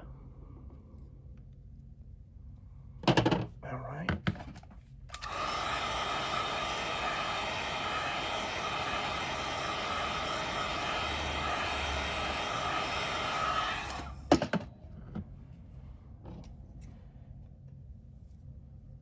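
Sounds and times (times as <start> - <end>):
hot-air blower running: 5.1 - 14.6.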